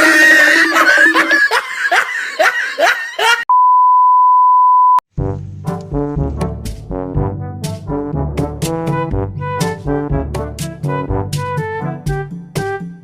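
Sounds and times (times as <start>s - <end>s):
censor beep: 3.5s - 5.0s
brass music: 5.1s - 13.0s.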